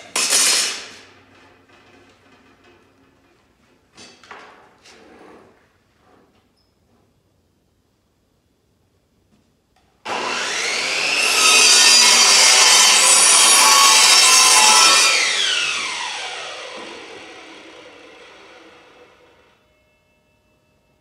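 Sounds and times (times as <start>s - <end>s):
electric saw cutting wood: 10.1s - 19.6s.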